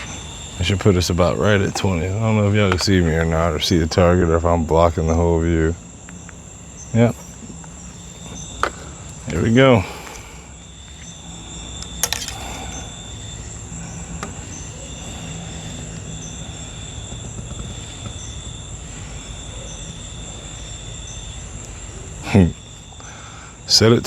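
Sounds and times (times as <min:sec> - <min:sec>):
crickets and insects chirping: 0:00.0 - 0:24.0
low hum: 0:00.0 - 0:24.0
sharp click: 0:11.9 - 0:12.8.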